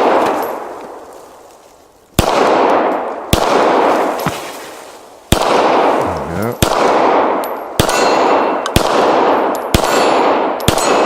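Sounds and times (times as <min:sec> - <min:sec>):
pistol shots with echo: 0:02.2 - 0:03.9, 0:05.3 - 0:11.0.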